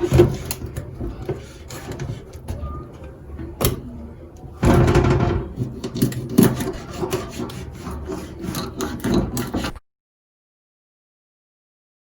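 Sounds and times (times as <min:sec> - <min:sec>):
scraping while cleaning fish: 0:00.0 - 0:02.6, 0:04.7 - 0:09.8.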